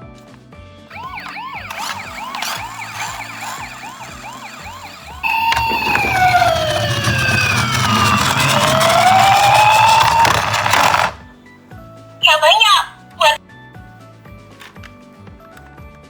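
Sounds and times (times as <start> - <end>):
toy electronic siren: 0.9 - 11.2, 12.2 - 13.4.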